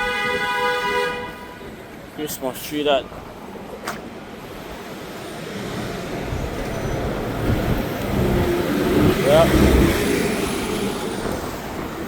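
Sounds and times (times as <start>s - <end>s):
vehicle engine approaching: 5.0s - 11.8s.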